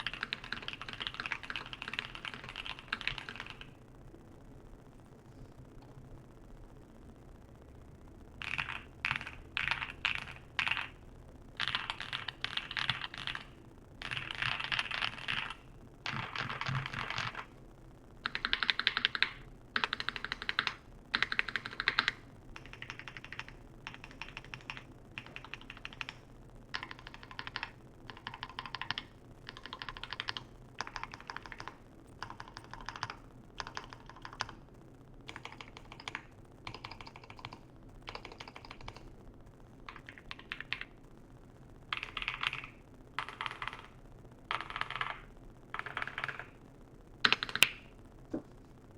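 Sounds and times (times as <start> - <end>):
typing on mechanical keyboard: 0.0 - 3.7, 8.4 - 11.0, 11.6 - 17.5, 18.2 - 34.6, 35.3 - 39.1, 39.9 - 40.9, 41.9 - 46.6, 47.2 - 47.9.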